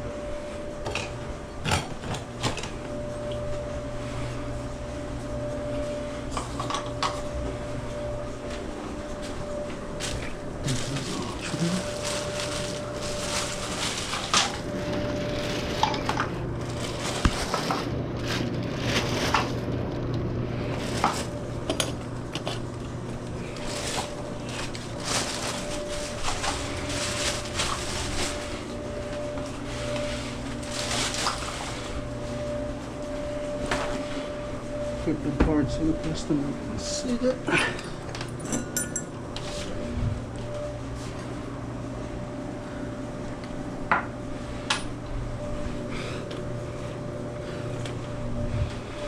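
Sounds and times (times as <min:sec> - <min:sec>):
steady low hum: 0:00.0 - 0:49.0
metal tools clinking and knocking: 0:38.4 - 0:39.1.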